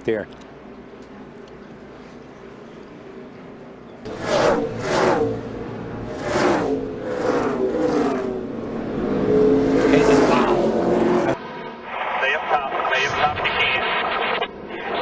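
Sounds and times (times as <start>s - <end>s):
race cars passing at speed: 4.0s - 12.8s.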